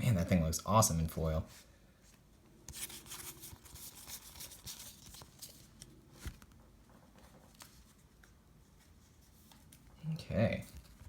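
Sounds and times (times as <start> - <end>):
trading cards rustling: 2.7 - 6.5.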